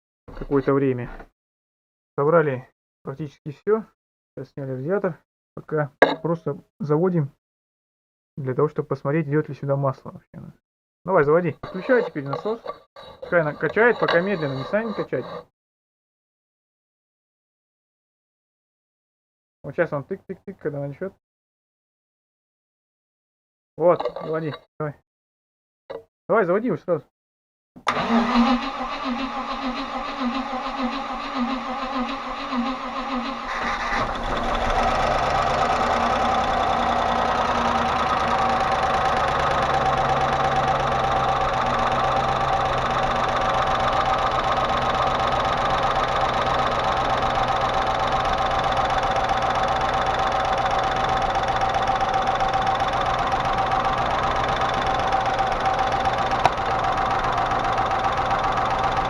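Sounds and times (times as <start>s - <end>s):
car engine cranking: 27.9s - 59.0s
engine idling with lifter tapping: 33.9s - 59.0s.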